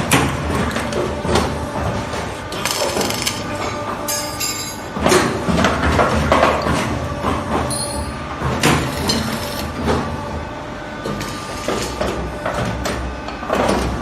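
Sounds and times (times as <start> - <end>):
machine motor hum: 4.9 - 14.0.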